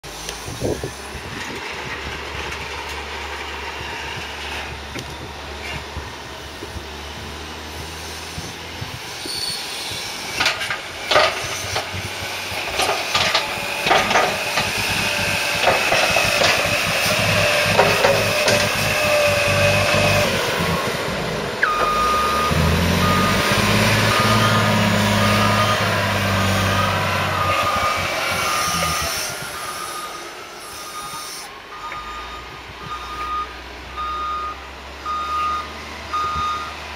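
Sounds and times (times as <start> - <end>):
diesel engines running: 0.0 - 36.9
machinery clanking and knocks: 10.0 - 21.0
reversing alarm beeping: 21.6 - 36.8.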